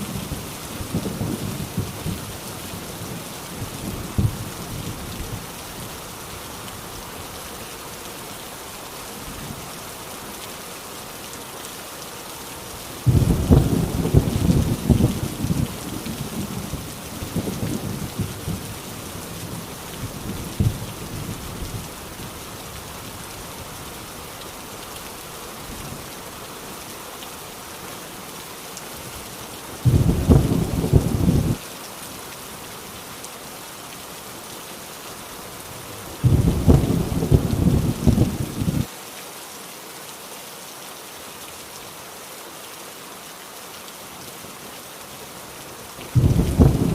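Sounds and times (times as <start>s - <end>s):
heavy rain falling: 0.0s - 46.9s
thunder rumbling: 13.0s - 18.7s, 29.8s - 31.6s, 36.2s - 38.9s, 46.2s - 46.9s.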